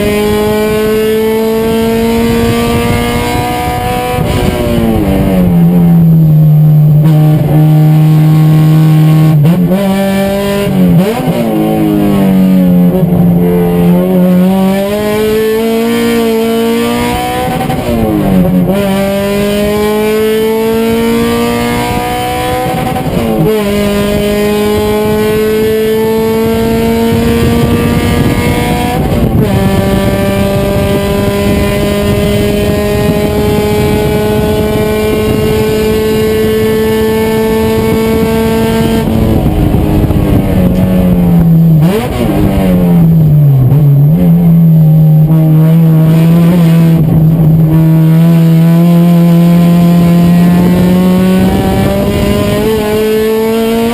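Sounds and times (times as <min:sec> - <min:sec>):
race car engine revving: 0:00.0 - 0:53.9
throttle blips on downshifts: 0:00.0 - 0:53.9.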